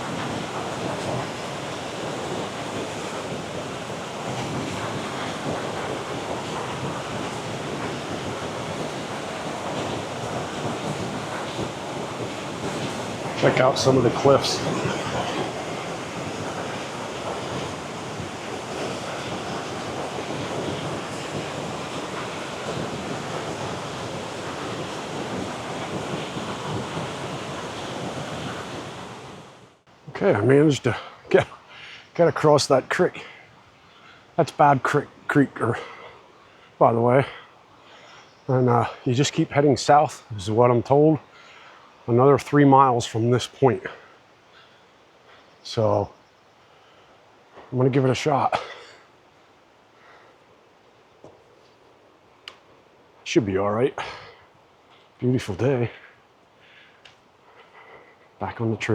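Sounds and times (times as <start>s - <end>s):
rushing creek and waterfall: 0.0s - 33.3s.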